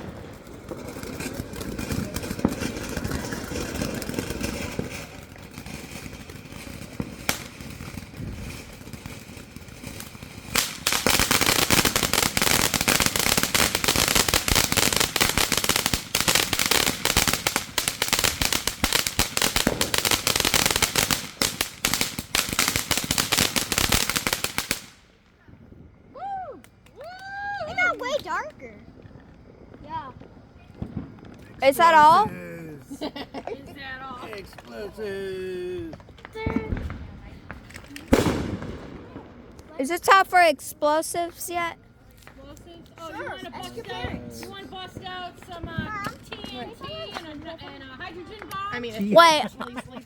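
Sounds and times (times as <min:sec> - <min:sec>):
rapid crackling pops: 0:00.0 - 0:25.0, 0:35.9 - 0:42.7
firework bangs: 0:00.0 - 0:50.0.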